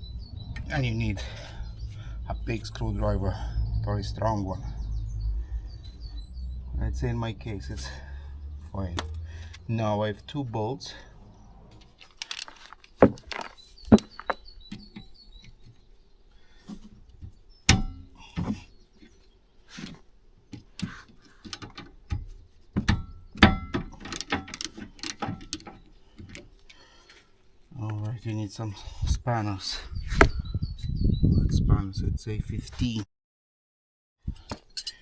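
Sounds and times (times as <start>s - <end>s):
metal hand tools clinking: 11.8s - 14.4s, 34.6s - 35.0s.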